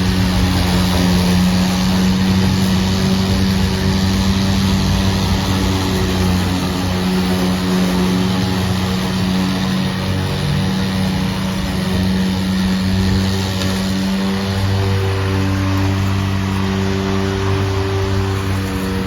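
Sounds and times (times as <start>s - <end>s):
electric lawn mower running: 0.0s - 19.0s.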